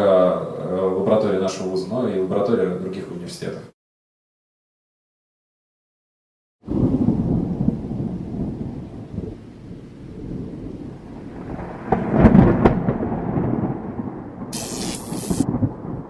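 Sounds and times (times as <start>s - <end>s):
thunder rumbling and cracking: 6.6s - 14.6s, 15.4s - 16.0s.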